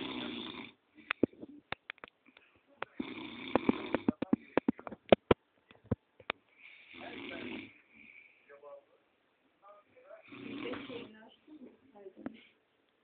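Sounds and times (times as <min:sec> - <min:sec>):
man snoring: 0:00.0 - 0:00.8, 0:03.0 - 0:04.2, 0:06.8 - 0:07.8, 0:10.2 - 0:11.1
sharp clicks and pops: 0:01.0 - 0:06.4.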